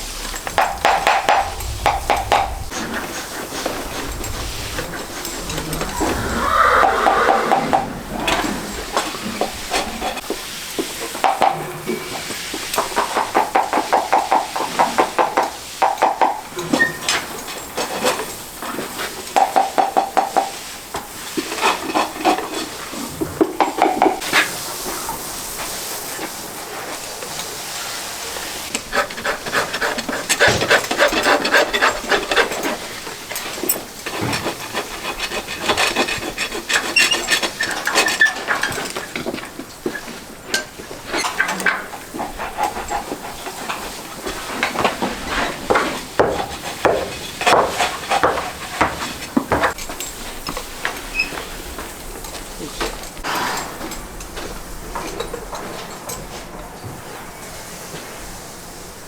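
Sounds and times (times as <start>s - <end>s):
rasp scraping a hoof: 19.0s - 24.5s, 28.7s - 50.5s.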